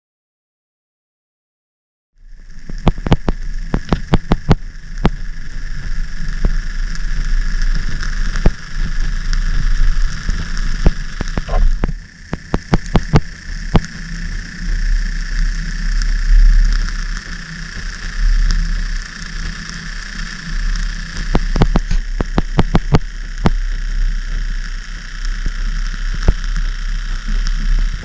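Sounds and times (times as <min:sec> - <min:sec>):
high camera whine: 0:02.2 - 0:28.0
low hum: 0:02.2 - 0:28.0
sharp clicks: 0:02.8 - 0:05.2, 0:07.6 - 0:14.0, 0:19.5 - 0:23.6.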